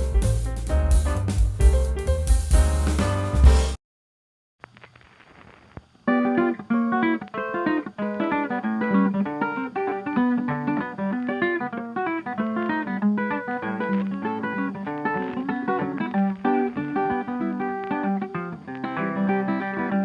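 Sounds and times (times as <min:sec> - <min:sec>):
plucked acoustic guitar music: 0:06.1 - 0:20.0.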